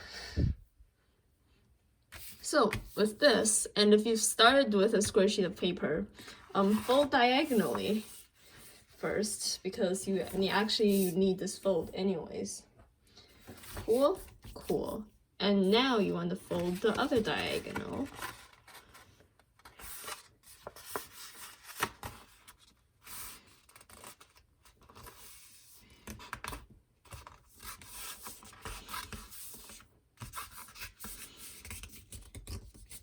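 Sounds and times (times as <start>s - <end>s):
paper rustling and folding: 6.2s - 9.3s, 15.9s - 33.0s.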